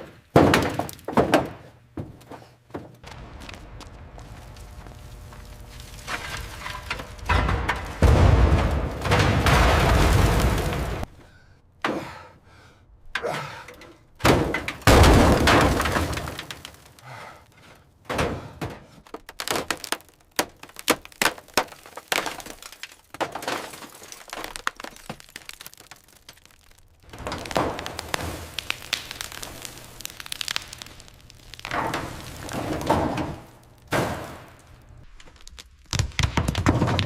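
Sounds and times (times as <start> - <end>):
sharp cracks knocks and thuds: 0.0 - 11.1, 13.2 - 37.0.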